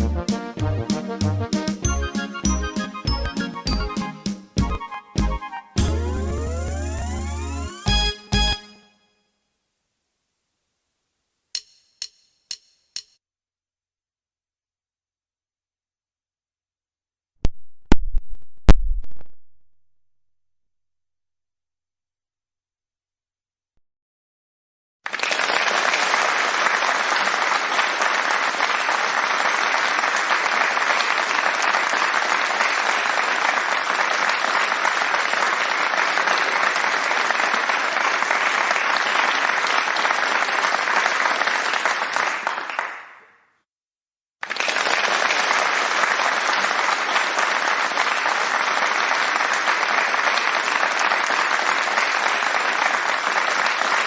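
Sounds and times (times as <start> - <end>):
dense clapping: 28.4 - 43.2, 44.4 - 54.0.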